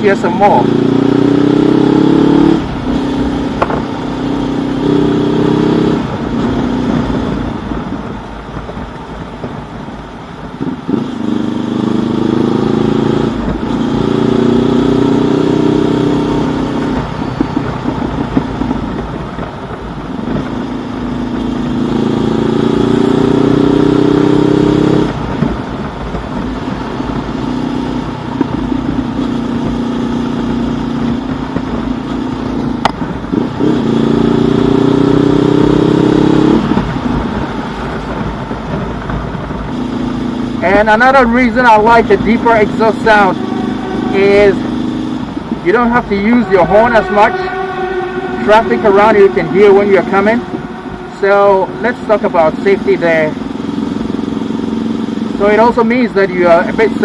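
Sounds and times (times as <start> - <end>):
motorcycle engine accelerating: 0.0 - 57.0.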